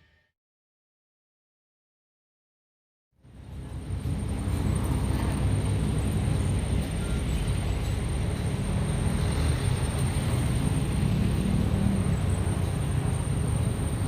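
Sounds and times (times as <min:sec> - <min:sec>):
heavy machinery engine rumble: 0:03.3 - 0:14.0.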